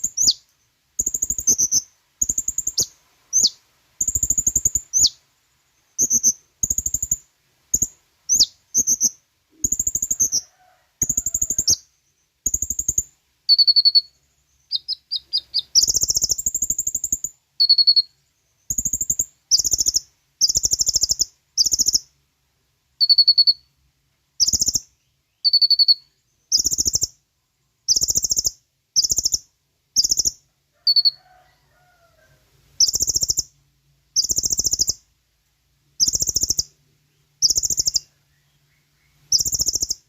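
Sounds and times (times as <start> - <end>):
bird singing chirps and trills: 0.0 - 0.4, 1.0 - 5.2, 5.8 - 7.2, 7.8 - 10.4, 11.0 - 22.1, 24.4 - 27.2, 27.9 - 31.2, 32.8 - 33.6, 34.2 - 35.0, 36.0 - 40.0.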